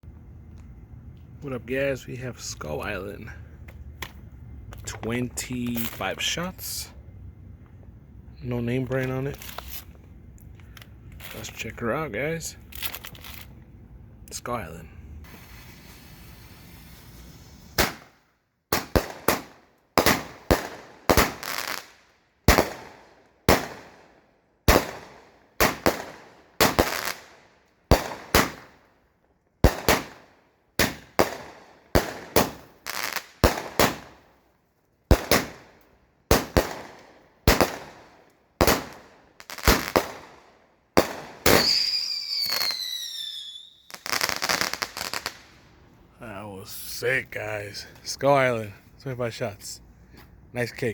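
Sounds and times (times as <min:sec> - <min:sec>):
firework hissing: 0:15.2 - 0:18.1, 0:41.4 - 0:45.4
firework whistles: 0:15.2 - 0:18.2, 0:41.4 - 0:45.4
firework bangs: 0:15.2 - 0:27.3, 0:27.9 - 0:28.8, 0:29.6 - 0:34.2, 0:35.1 - 0:35.7, 0:36.3 - 0:45.6.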